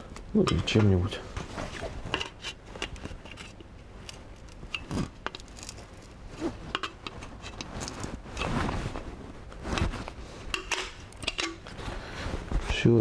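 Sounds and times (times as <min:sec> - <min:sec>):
light metallic clicks and scrapes: 0:00.4 - 0:08.9, 0:09.7 - 0:11.9.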